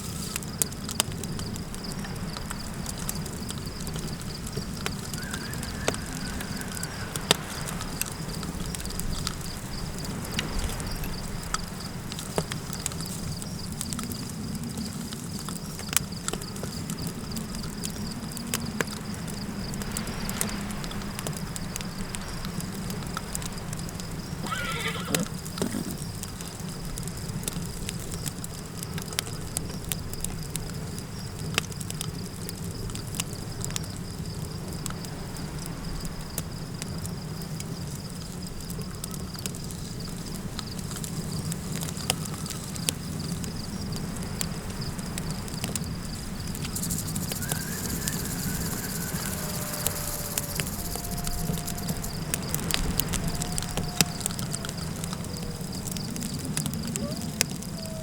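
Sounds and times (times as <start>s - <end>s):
low wind rumble: 0.0s - 27.9s, 39.2s - 58.0s
campfire crackling and popping: 0.0s - 58.0s
wavering animal call: 5.0s - 7.8s, 24.4s - 25.9s, 46.8s - 58.0s
high insect-like tone: 45.9s - 57.4s.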